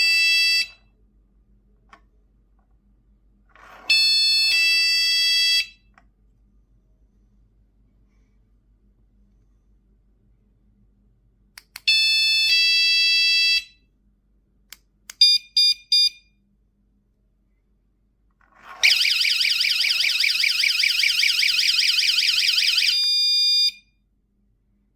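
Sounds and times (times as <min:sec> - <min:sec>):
fast warbling siren: 0:18.6 - 0:23.2.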